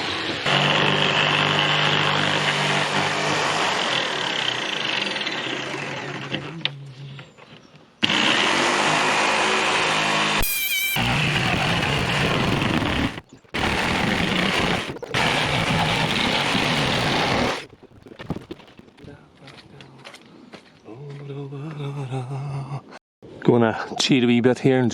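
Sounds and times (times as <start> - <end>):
power saw cutting plywood: 0.0 - 6.5, 8.0 - 17.6.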